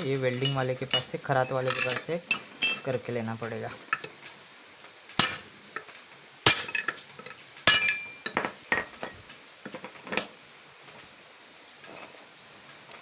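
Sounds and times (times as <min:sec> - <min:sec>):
hammer striking metal: 0:05.2 - 0:05.5, 0:06.5 - 0:06.9, 0:07.7 - 0:08.5.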